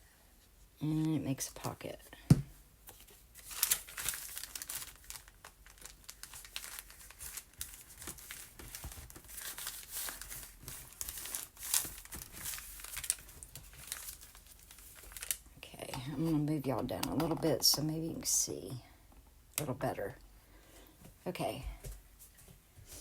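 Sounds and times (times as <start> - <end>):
paper crinkling and rustling: 2.8 - 16.4.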